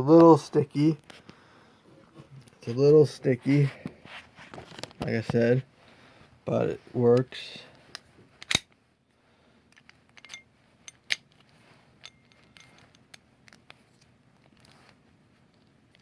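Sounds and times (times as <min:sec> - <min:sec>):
sharp metallic padlock click: 0:08.4 - 0:08.7.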